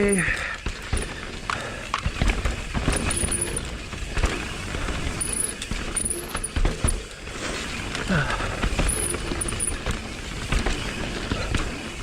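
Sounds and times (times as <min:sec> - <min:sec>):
bike frame and drivetrain clatter: 0:00.0 - 0:12.0
tyres rolling on dirt: 0:00.0 - 0:12.0
disc brakes squealing: 0:02.8 - 0:03.7, 0:05.2 - 0:07.0, 0:08.8 - 0:09.8.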